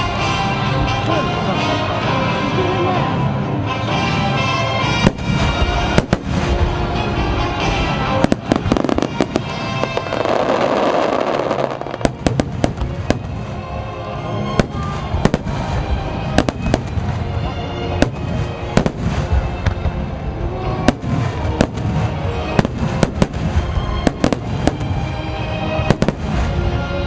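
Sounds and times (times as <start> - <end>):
orchestral music: 0.0 - 27.0
fireworks crackle: 4.9 - 13.8, 14.4 - 27.0
fireworks banging: 5.0 - 13.7, 14.5 - 26.9.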